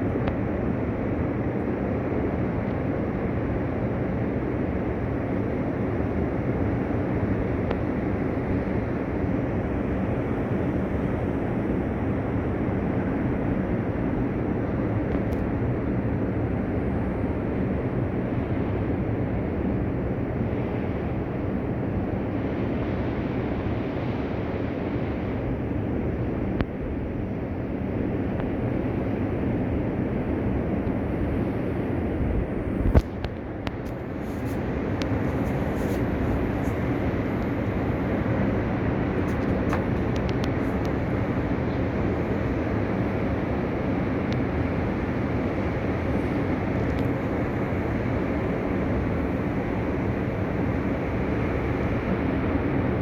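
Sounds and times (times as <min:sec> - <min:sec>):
wind on microphone: 0:00.0 - 0:53.0
heavy waves breaking: 0:28.8 - 0:53.0.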